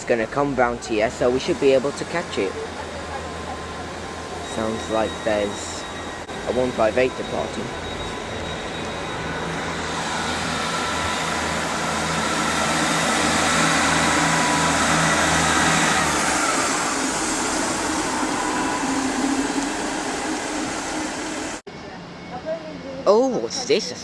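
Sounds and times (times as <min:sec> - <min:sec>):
diesel engine note: 0:00.0 - 0:21.9
train rumble: 0:00.0 - 0:24.0.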